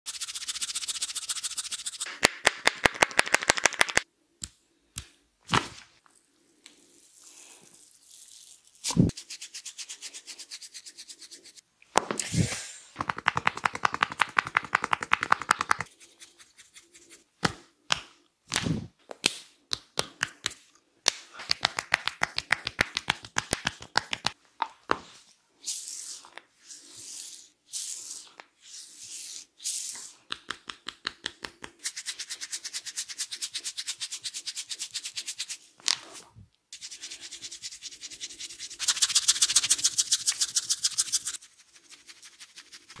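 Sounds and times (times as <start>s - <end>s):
hands rubbing through hair: 0.1s - 4.0s, 36.8s - 43.0s
hands tapping on head: 13.0s - 15.9s, 21.4s - 24.4s.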